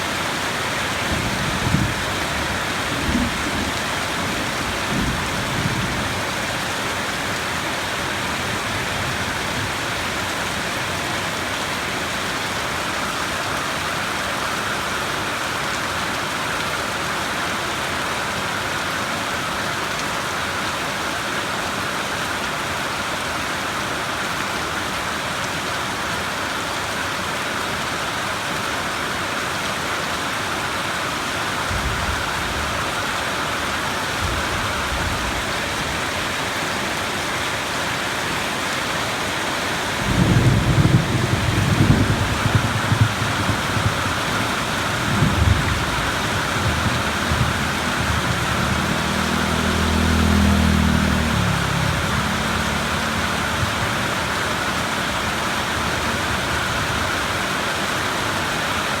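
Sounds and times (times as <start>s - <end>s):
rain falling: 0.0s - 59.0s
thunder rumbling: 1.0s - 6.2s, 31.6s - 33.2s, 40.0s - 57.2s.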